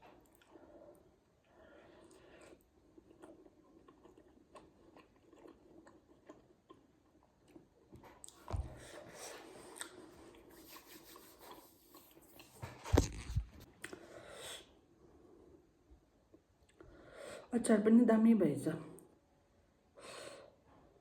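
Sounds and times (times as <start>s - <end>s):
chewing and mouth clicks: 0.0s - 0.6s, 2.0s - 8.6s, 9.6s - 14.0s.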